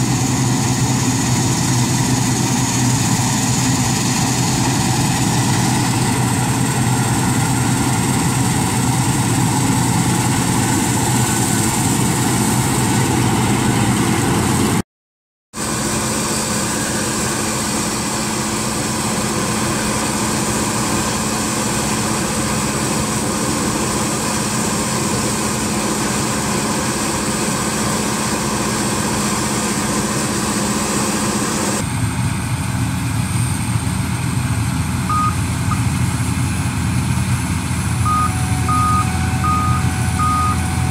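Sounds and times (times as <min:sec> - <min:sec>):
combine harvester engine: 0:00.0 - 0:14.8, 0:15.6 - 0:40.9
threshing machinery running: 0:00.0 - 0:14.8, 0:15.6 - 0:40.9.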